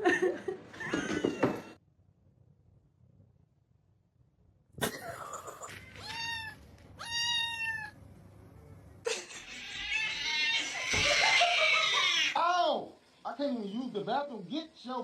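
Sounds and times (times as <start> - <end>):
cat meowing: 6.0 - 8.0, 9.4 - 12.4.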